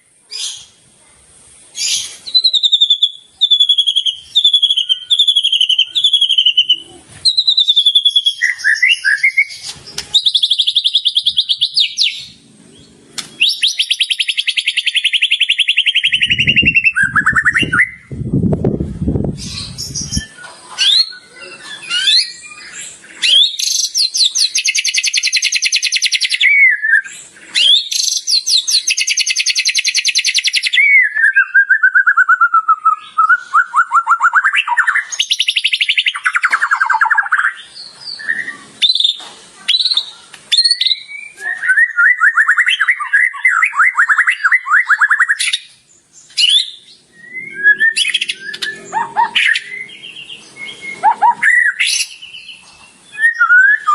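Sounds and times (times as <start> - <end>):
bird singing whistles and trills: 1.8 - 18.3, 19.3 - 53.9.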